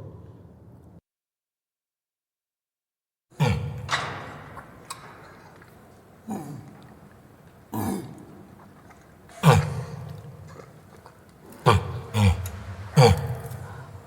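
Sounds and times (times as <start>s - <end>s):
orangutan calling: 7.8s - 14.0s.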